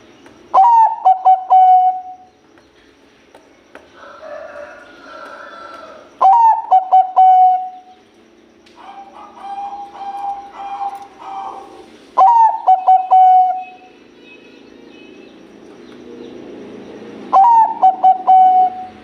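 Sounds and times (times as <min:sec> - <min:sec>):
dove cooing: 0:00.5 - 0:02.3, 0:05.5 - 0:08.0, 0:08.8 - 0:13.9, 0:17.3 - 0:19.0.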